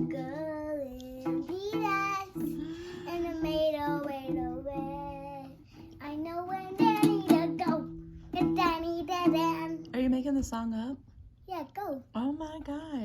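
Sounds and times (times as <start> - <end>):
child singing: 0.0 - 9.9.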